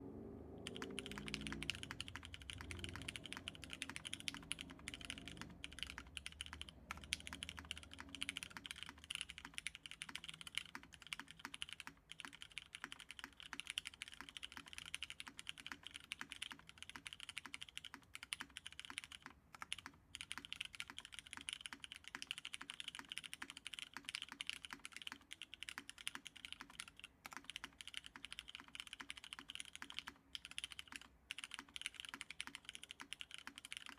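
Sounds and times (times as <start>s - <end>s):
fast typing on mechanical keyboard: 0.6s - 33.9s.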